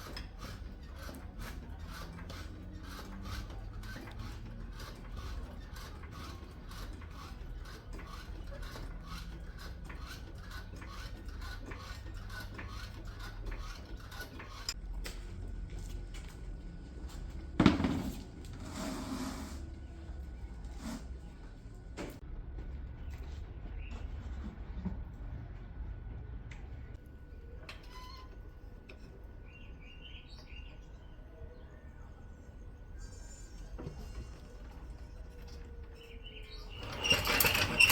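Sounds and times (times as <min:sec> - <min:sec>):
short scraping rub: 0:18.5 - 0:20.0, 0:20.6 - 0:21.3.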